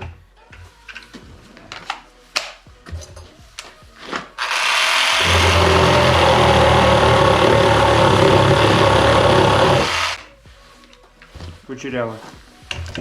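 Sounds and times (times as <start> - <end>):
reciprocating saw cutting: 4.4 - 10.2.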